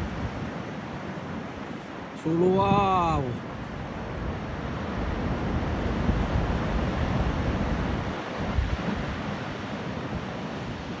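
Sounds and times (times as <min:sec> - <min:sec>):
sea surf crashing: 0:00.0 - 0:11.0
wind buffeting microphone: 0:02.5 - 0:09.3.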